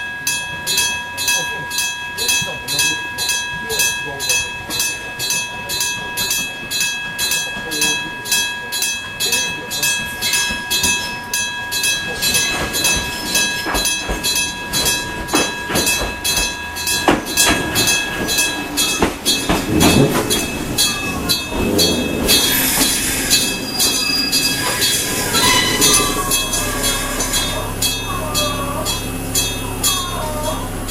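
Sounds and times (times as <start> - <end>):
train rumble: 0.0 - 30.9
crossing gong striking: 1.8 - 30.9
high-pitched wheel hiss: 20.8 - 30.6.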